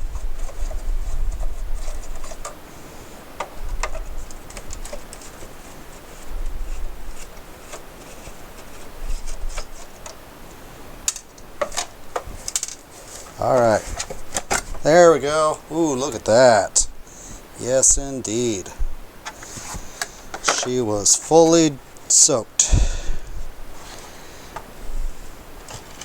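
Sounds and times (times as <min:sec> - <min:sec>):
metal parts clicking and scraping: 0:11.1 - 0:14.9.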